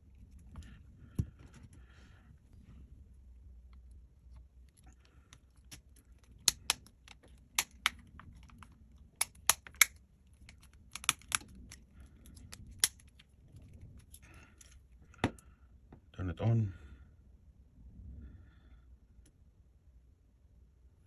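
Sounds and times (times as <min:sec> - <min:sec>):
plastic parts clicking: 0:05.3 - 0:13.3.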